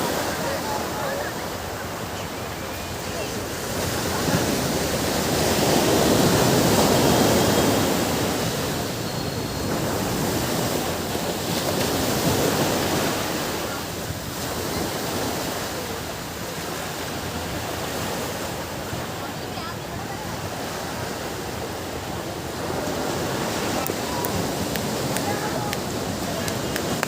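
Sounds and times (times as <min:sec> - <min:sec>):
ocean waves breaking on beach: 0:00.0 - 0:27.0.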